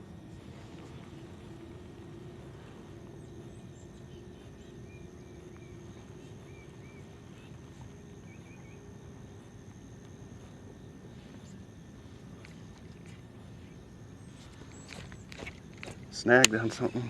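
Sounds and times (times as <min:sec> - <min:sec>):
steady low hum: 0:00.0 - 0:17.0
faint bird chirps: 0:00.4 - 0:09.6.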